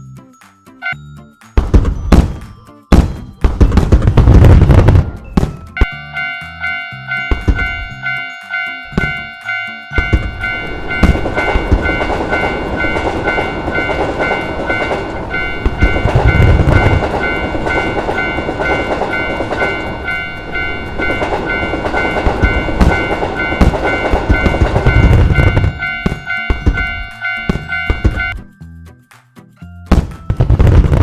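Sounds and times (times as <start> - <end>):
level crossing bell ringing: 0.0 - 3.8, 5.1 - 28.8
heavy low thumps: 3.0 - 6.0, 7.2 - 8.0
train rumbling past: 4.1 - 28.4.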